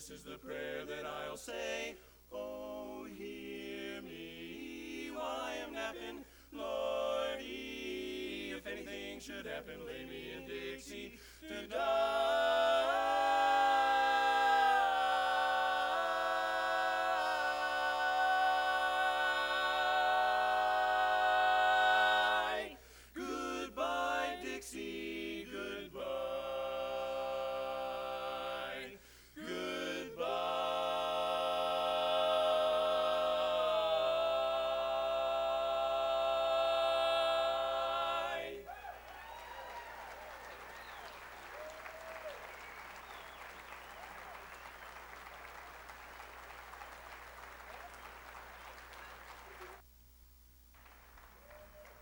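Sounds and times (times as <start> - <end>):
male quartet singing a cappella: 0.0 - 38.7.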